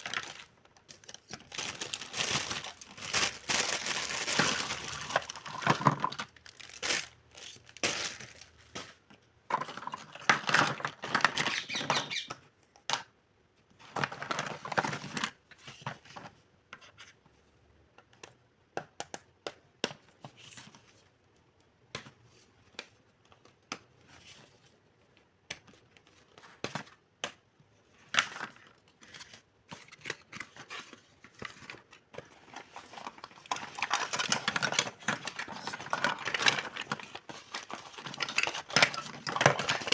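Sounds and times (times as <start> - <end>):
plastic pieces clicking and knocking: 0.0 - 7.1, 9.5 - 13.1, 31.4 - 39.9
plastic packaging crinkling and tearing: 0.0 - 9.0, 28.1 - 39.9.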